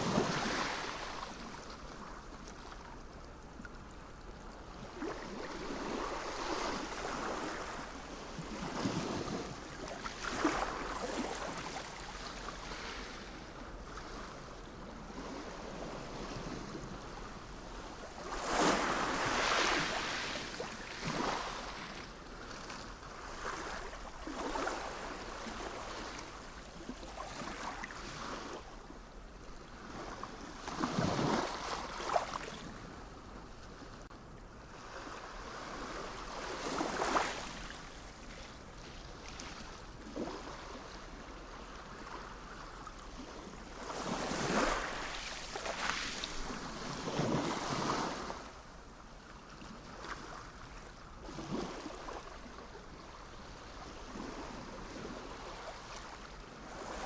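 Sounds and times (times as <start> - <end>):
sea waves washing on shore: 0.0 - 3.5, 4.6 - 34.1, 34.8 - 48.7.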